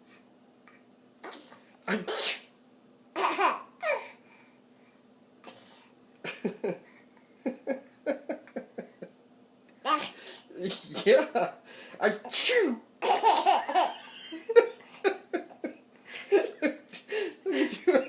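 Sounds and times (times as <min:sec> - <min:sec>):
girl fake sneezing: 0:01.2 - 0:02.5.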